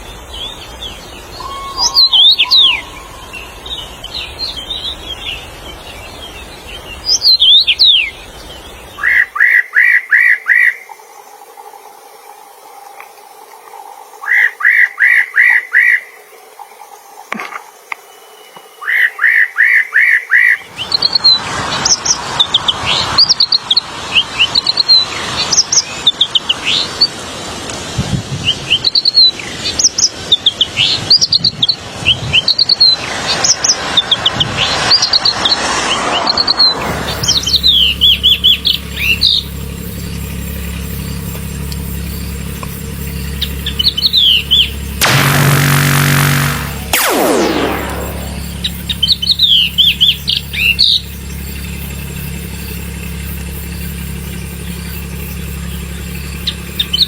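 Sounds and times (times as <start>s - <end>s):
songbirds chirping and trilling: 0.0s - 27.5s, 28.5s - 45.1s, 47.5s - 57.0s
rushing background noise: 20.6s - 57.0s
steady low hum: 31.5s - 57.0s.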